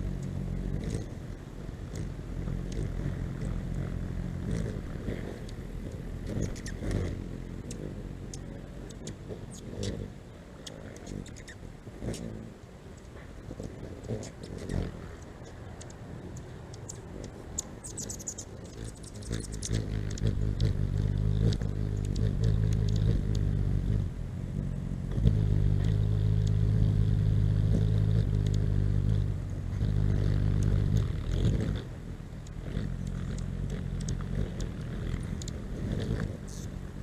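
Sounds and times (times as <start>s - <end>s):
hummingbird wings humming: 0.0s - 37.0s
high chip calls: 10.6s - 12.2s, 16.7s - 20.7s.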